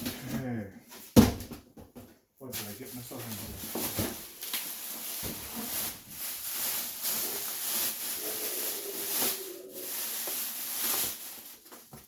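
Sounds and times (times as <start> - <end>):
packaging rustling and crinkling: 2.6 - 12.0.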